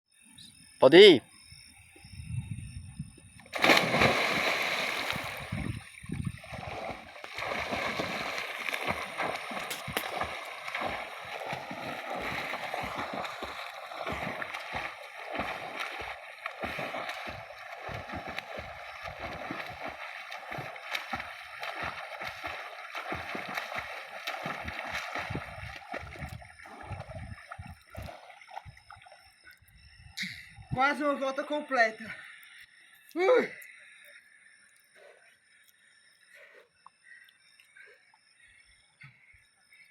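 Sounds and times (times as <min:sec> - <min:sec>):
swimming splashes: 0:03.5 - 0:29.3.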